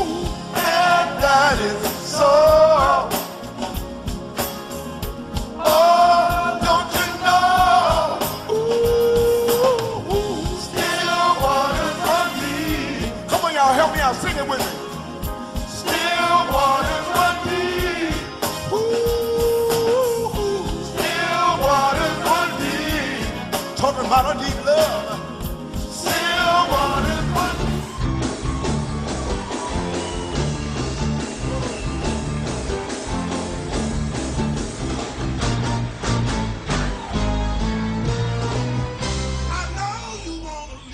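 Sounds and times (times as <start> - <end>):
person singing: 0.0 - 3.2, 5.6 - 13.2, 18.6 - 23.4
guitar: 0.0 - 40.0
live soul band playing: 0.0 - 40.4
bass: 0.0 - 40.9.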